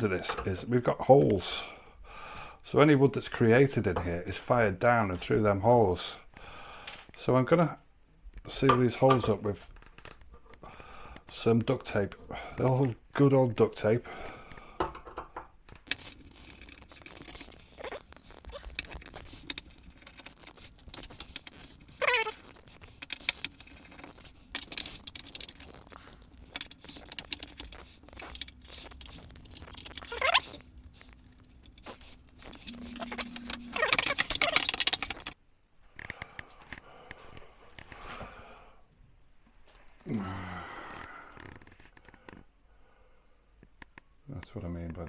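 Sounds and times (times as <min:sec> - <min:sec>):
duct tape crackling: 0:15.6 - 0:35.4
tape ripping: 0:15.8 - 0:35.4.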